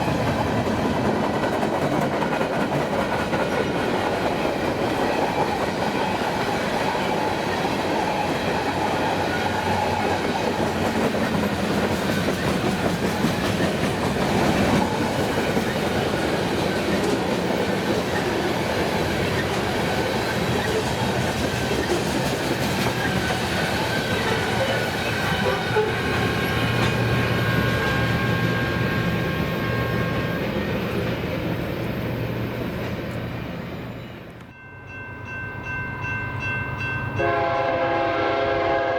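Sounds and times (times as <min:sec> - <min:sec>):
train wheels clattering over rails: 0:00.0 - 0:29.4.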